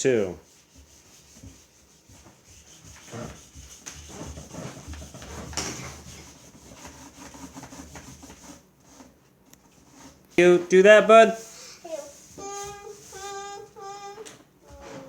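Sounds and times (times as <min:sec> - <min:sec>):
marker scribbling: 0:00.4 - 0:09.1, 0:11.4 - 0:14.1.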